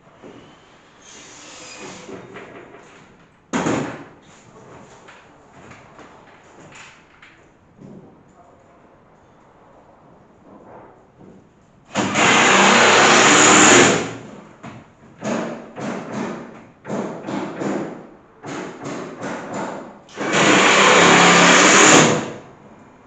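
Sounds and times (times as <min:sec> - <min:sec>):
electric drill running: 0:11.9 - 0:14.1, 0:20.1 - 0:22.2.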